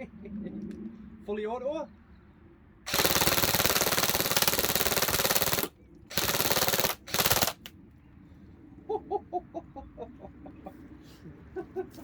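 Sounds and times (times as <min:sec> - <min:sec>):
airsoft gun firing bursts: 0:02.9 - 0:07.7.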